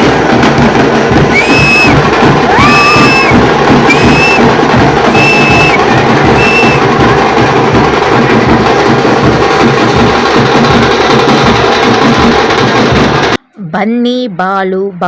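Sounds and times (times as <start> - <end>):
festival drumming: 0.0 - 13.9
short high whistle blasts: 1.3 - 4.5, 5.1 - 6.8.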